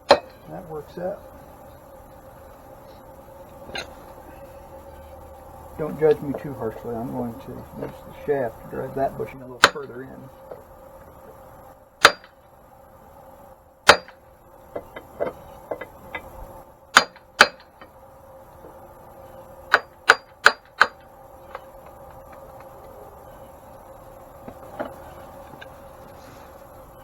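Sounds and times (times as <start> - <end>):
metal-on-metal clanks: 0.0 - 0.5, 3.7 - 4.1.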